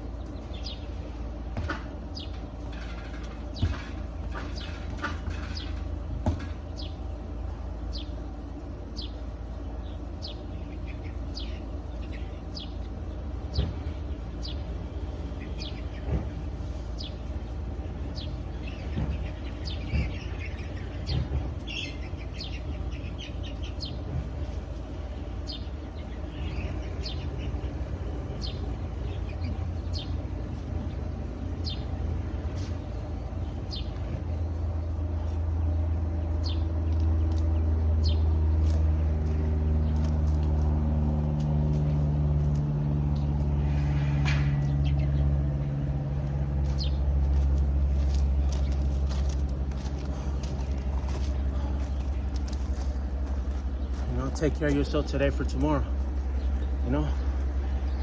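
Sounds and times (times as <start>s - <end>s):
low rumble: 0.0s - 58.0s.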